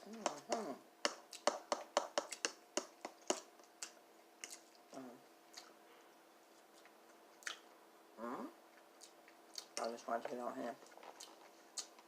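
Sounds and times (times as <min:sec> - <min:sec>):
mouth clicks and smacks chewing: 0:02.2 - 0:05.8, 0:06.7 - 0:07.7, 0:08.8 - 0:10.0, 0:11.1 - 0:12.0.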